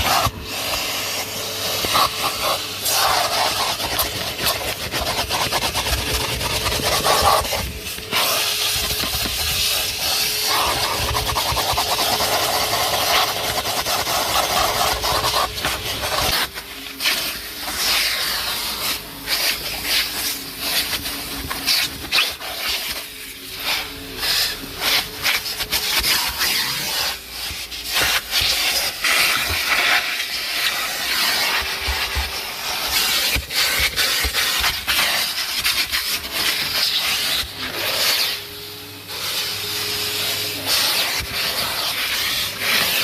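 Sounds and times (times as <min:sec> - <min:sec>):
vacuum nozzle rubbing and sealing: 0:00.0 - 0:38.5, 0:39.1 - 0:43.0
vacuum cleaner running: 0:00.0 - 0:43.0.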